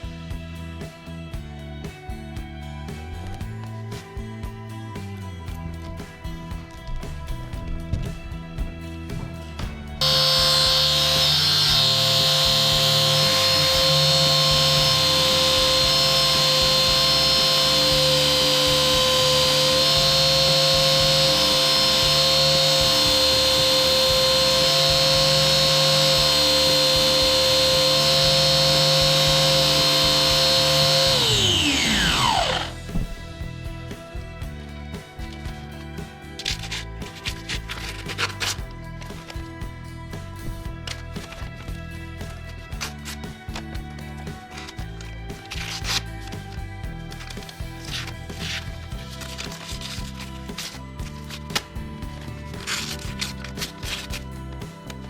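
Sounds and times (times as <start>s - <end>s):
angle grinder whining: 10.0s - 33.2s.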